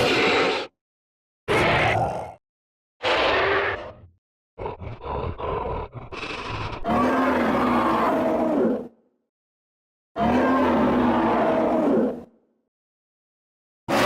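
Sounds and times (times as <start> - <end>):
creature growling and roaring: 1.5 - 2.4, 3.0 - 8.9, 10.2 - 12.3.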